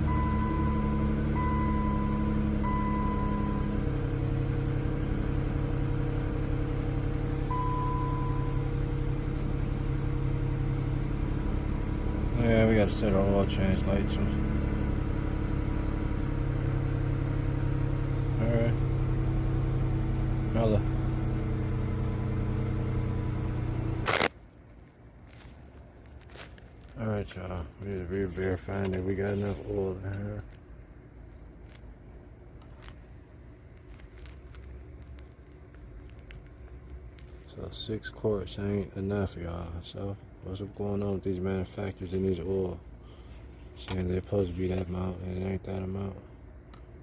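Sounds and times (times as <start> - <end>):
electronic dashboard chime: 0.0 - 4.7, 7.3 - 9.9
car engine idling: 0.0 - 24.1, 26.9 - 47.0.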